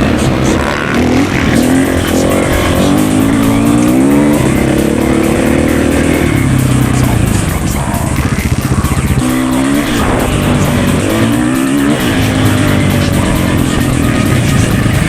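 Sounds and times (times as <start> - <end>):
dirt bike engine revving: 0.0 - 15.0.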